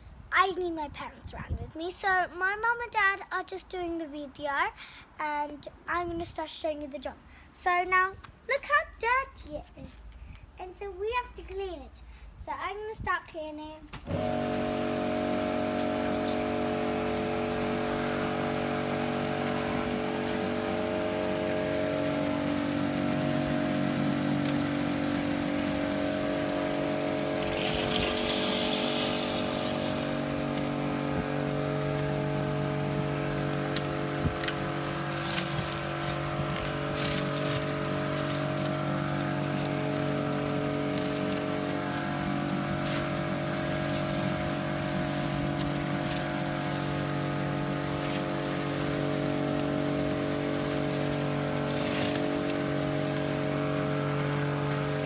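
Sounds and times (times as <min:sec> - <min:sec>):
pressure washer motor humming: 0:14.0 - 0:55.0
water jet hissing: 0:14.1 - 0:55.0.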